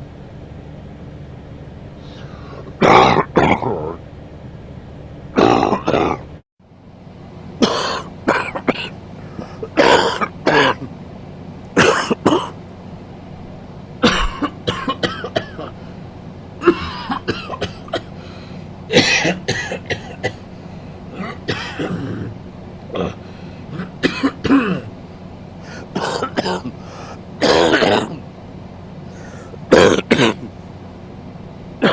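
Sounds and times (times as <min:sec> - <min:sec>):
man coughing: 0:02.8 - 0:04.0, 0:05.4 - 0:06.2, 0:07.6 - 0:10.9, 0:11.8 - 0:12.6, 0:14.0 - 0:15.8, 0:16.6 - 0:18.2, 0:18.9 - 0:20.4, 0:21.1 - 0:22.3, 0:22.9 - 0:24.9, 0:25.7 - 0:28.2, 0:29.3 - 0:30.5.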